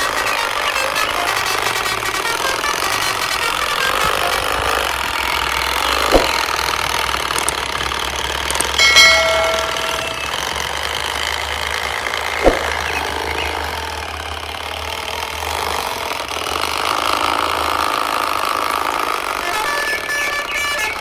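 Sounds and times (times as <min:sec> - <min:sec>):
high motor whine: 0:00.0 - 0:21.0
whir of small motors: 0:00.0 - 0:21.0
sharp click: 0:08.6 - 0:10.4.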